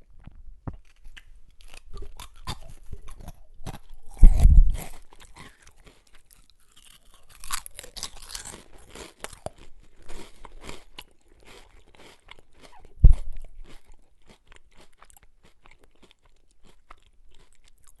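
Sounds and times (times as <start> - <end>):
person chewing potato chips: 0.0 - 18.0.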